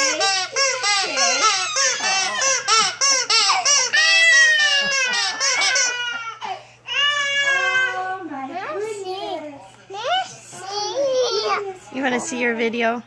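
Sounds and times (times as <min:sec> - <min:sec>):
young child squealing: 0:03.3 - 0:05.0.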